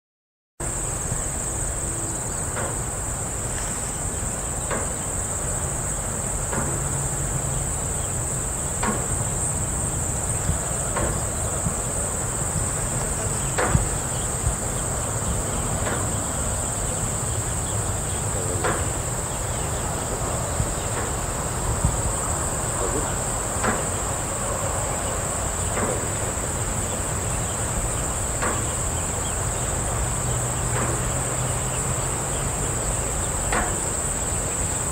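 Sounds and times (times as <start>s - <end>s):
high-pitched insect chorus: 0.6s - 34.9s
light knocks: 12.6s - 14.6s.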